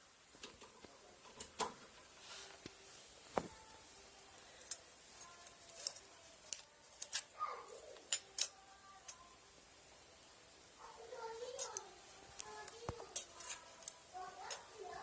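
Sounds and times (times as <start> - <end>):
sharp clicks and snaps: 4.6 - 7.3, 11.6 - 14.6.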